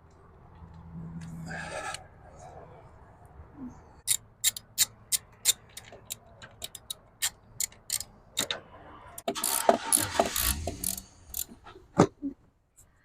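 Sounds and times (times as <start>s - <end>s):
parts rattling and scraping: 4.0s - 12.9s.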